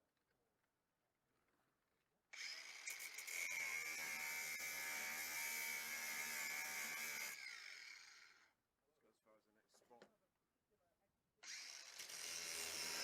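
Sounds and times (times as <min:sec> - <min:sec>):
power tool whining on sheet metal: 0:02.4 - 0:08.4, 0:11.4 - 0:13.0.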